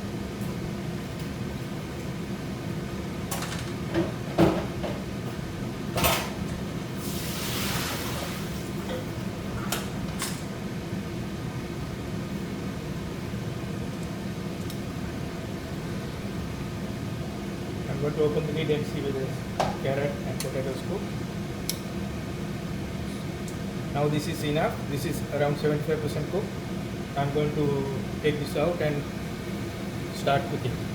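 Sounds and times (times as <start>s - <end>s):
steady low hum: 0.0s - 30.9s
steam hissing: 7.0s - 8.5s.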